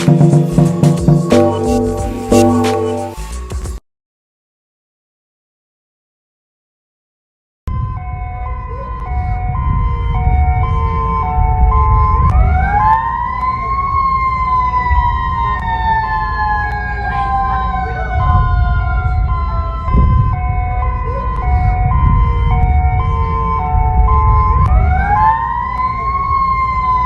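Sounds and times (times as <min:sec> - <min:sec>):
two-tone hi-lo siren: 0:00.0 - 0:03.2, 0:07.7 - 0:27.0
wailing siren: 0:00.0 - 0:03.2, 0:07.7 - 0:27.0
low rumble: 0:07.7 - 0:12.9, 0:13.7 - 0:25.2.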